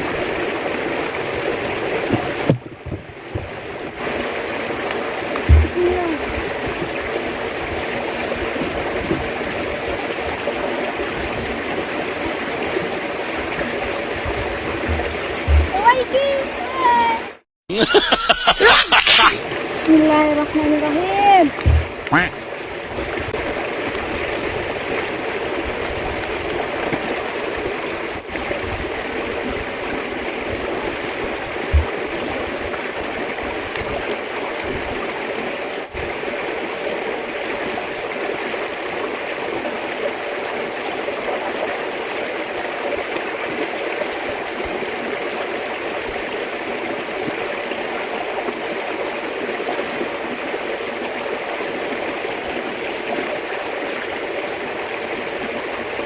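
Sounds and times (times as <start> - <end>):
flowing water rushing: 0.0 - 56.0
dull low thumps: 5.4 - 6.8, 14.3 - 15.8, 21.6 - 22.4, 31.7 - 32.0
sharp knock: 5.5 - 5.8, 21.6 - 22.2.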